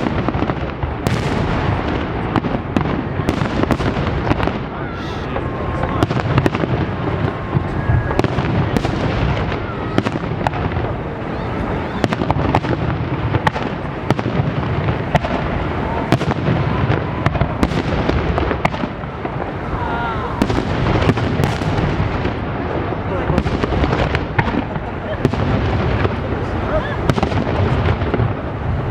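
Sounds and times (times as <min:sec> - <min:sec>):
fireworks bangs: 0:00.0 - 0:28.9
fireworks crackle: 0:00.0 - 0:28.9.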